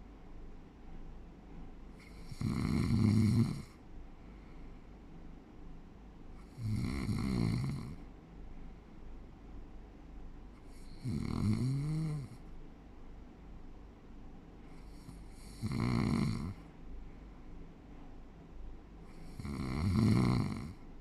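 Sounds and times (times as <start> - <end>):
person snoring: 2.0 - 3.7, 6.4 - 8.0, 10.7 - 12.4, 14.9 - 16.6, 19.1 - 20.8.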